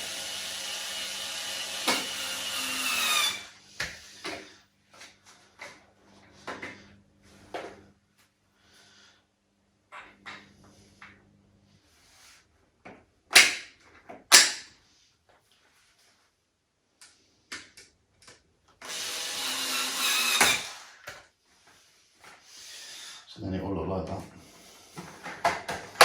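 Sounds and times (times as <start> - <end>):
cordless drill driving screw: 0.0 - 3.5, 18.8 - 21.0.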